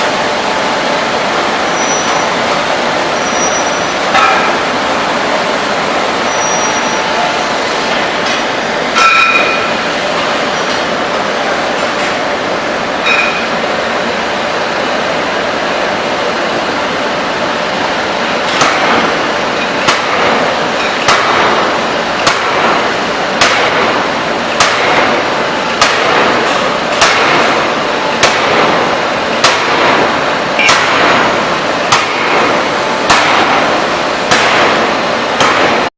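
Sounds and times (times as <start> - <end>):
forging hammer blows: 0.0 - 9.9, 18.5 - 35.9
loud rushing noise: 0.0 - 13.0, 13.6 - 35.9.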